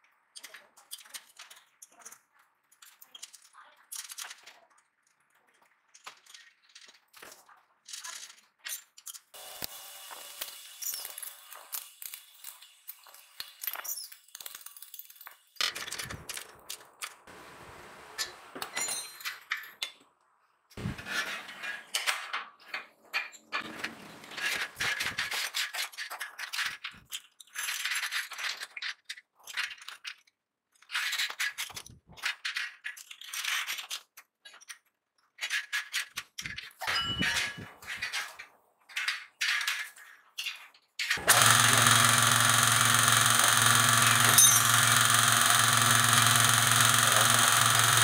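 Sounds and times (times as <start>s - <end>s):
metal tools clinking and clanging: 18.2s - 20.0s, 36.5s - 41.2s.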